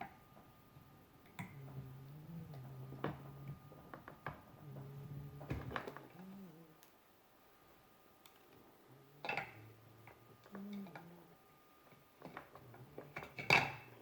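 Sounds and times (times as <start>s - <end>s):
low hum: 0.1s - 14.0s.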